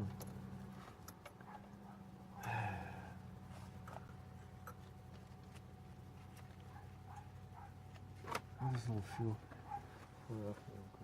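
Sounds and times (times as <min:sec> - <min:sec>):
faint low hum: 0:00.0 - 0:11.0
breathy sigh or grunt: 0:02.4 - 0:03.2.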